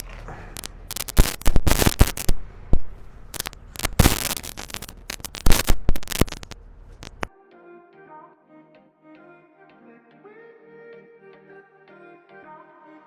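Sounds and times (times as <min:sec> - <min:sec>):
sharp crackles and knocks: 0:00.0 - 0:07.3.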